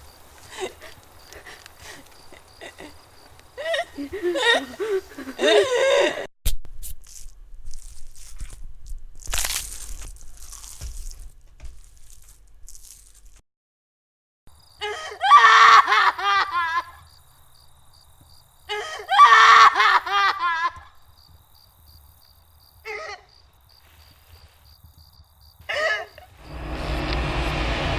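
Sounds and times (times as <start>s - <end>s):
crickets chirping: 0.0s - 6.2s, 14.5s - 27.9s
woman crying out: 14.8s - 16.8s
young woman screaming: 14.8s - 16.9s, 18.7s - 20.7s
low rumble: 26.4s - 27.9s.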